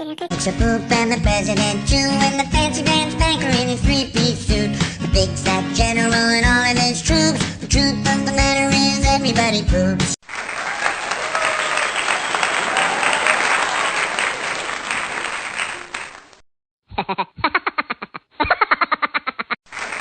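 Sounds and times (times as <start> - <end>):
crowd applauding and cheering: 10.2 - 16.4, 19.7 - 20.0.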